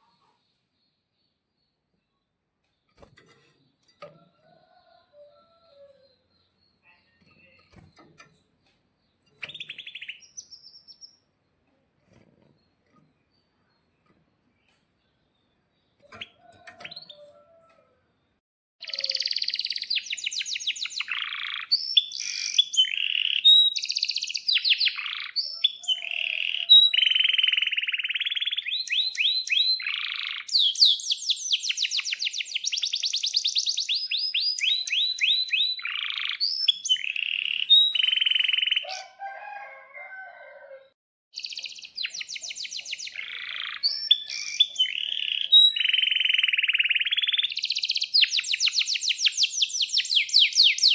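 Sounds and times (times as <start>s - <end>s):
canary singing trills: 4.7s - 11.2s, 18.8s - 39.2s, 41.4s - 50.9s.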